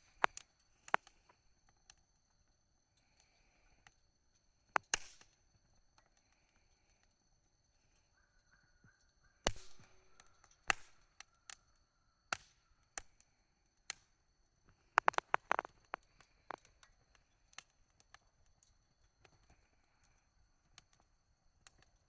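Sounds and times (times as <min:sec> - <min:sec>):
campfire crackling and popping: 0:00.0 - 0:22.0.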